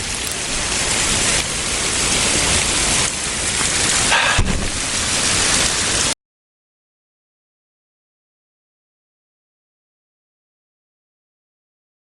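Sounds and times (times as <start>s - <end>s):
waterfall rushing: 0.0s - 6.2s
brief thump: 4.1s - 4.8s.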